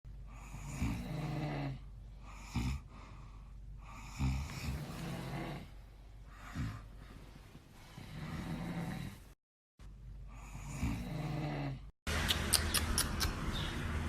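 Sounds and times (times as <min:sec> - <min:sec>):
men snoring: 0:00.4 - 0:01.8, 0:04.0 - 0:05.8, 0:08.0 - 0:09.3, 0:10.5 - 0:11.9
breathing: 0:02.0 - 0:04.7, 0:06.0 - 0:09.2.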